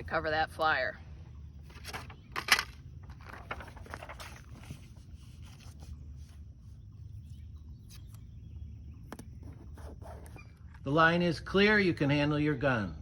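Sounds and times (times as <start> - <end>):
paper rustling: 1.7 - 6.8
tape being worked: 9.1 - 10.9.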